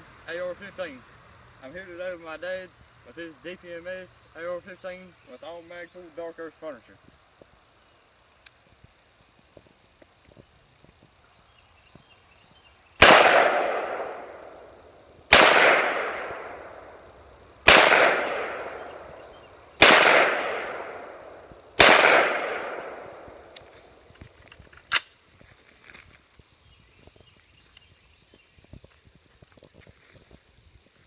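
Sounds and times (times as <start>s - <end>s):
rifle shots echoing: 13.0s - 14.7s, 15.3s - 17.0s, 17.6s - 23.5s
sharp click: 24.7s - 25.2s.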